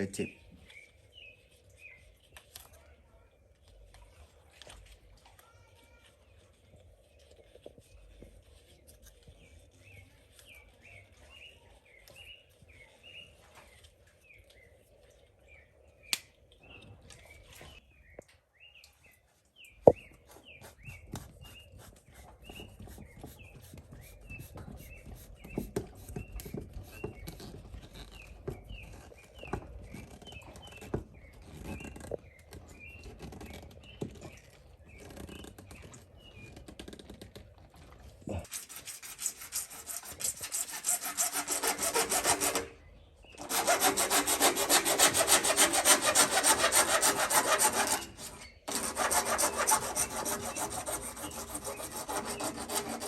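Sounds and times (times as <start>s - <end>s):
rasping on plastic pipe fittings: 19.8s - 53.0s.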